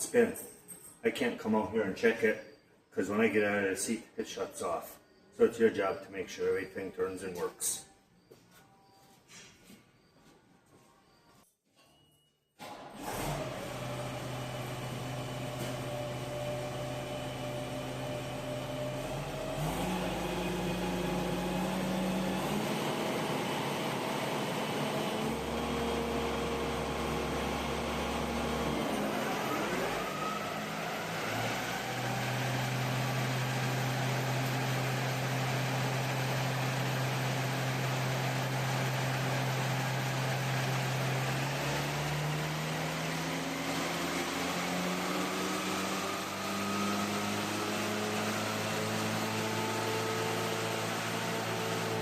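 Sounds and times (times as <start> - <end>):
diesel engine running: 13.0 - 52.0.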